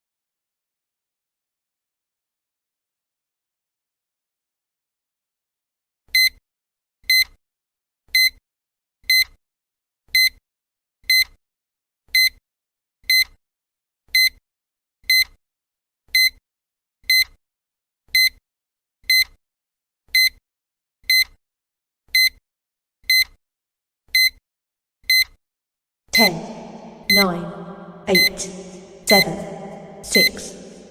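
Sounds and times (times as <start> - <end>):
countdown timer beeps: 26.2 - 30.9.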